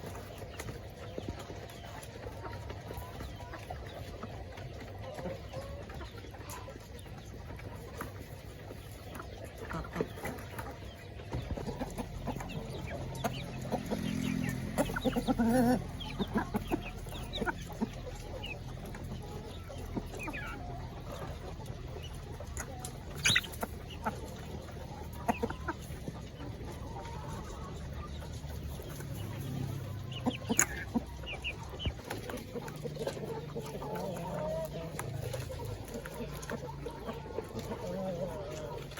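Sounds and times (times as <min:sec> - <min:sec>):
chickens clucking: 0:00.0 - 0:38.9.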